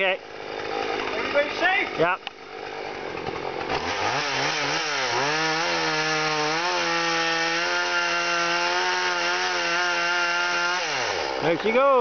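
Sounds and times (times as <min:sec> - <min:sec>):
chainsaw revving and cutting wood: 0:00.0 - 0:12.0.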